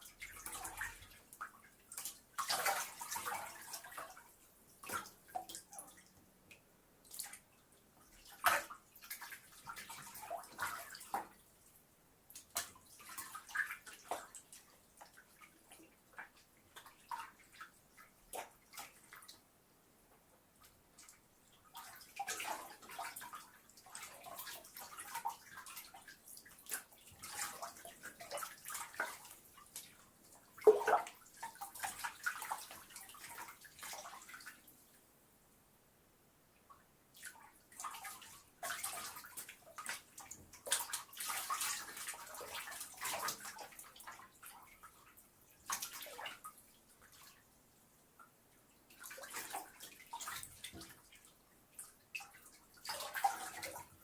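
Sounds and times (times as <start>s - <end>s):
bathwater splashing in a tub: 0.0s - 6.1s, 8.1s - 11.4s, 12.3s - 19.4s, 20.9s - 34.8s, 37.1s - 47.4s, 48.8s - 54.0s
water drips: 20.6s - 34.9s.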